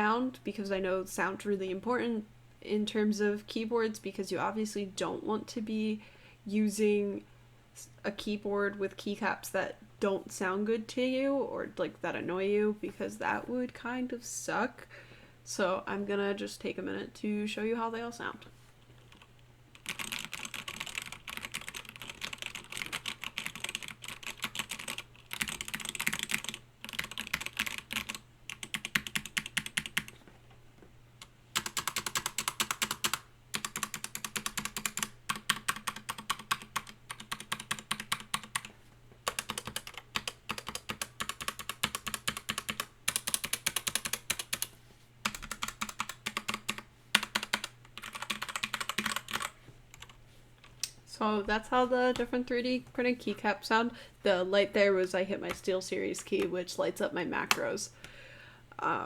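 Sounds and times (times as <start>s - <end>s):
fast keyboard typing: 19.0s - 30.2s, 31.6s - 50.2s.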